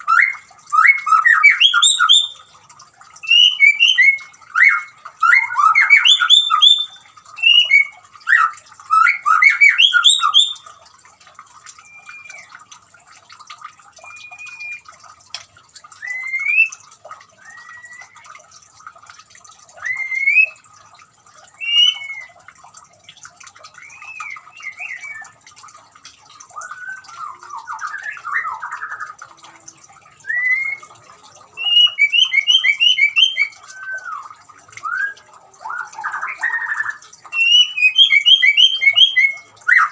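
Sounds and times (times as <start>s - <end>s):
faint trickling water: 0.0s - 39.9s
bird singing whistles and chatter: 11.8s - 12.6s, 14.0s - 14.9s, 17.4s - 18.2s, 23.7s - 25.4s, 30.2s - 31.0s, 31.6s - 39.9s.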